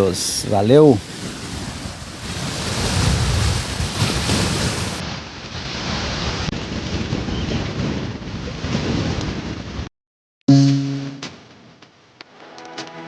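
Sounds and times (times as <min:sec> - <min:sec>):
wind buffeting microphone: 0:00.0 - 0:05.2, 0:06.1 - 0:09.9.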